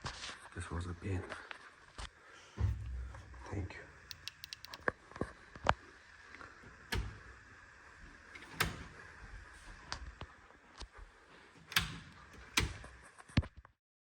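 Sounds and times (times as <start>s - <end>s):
sharp clicks and knocks: 2.6s - 5.8s, 6.9s - 7.4s, 8.3s - 9.0s, 11.7s - 13.1s.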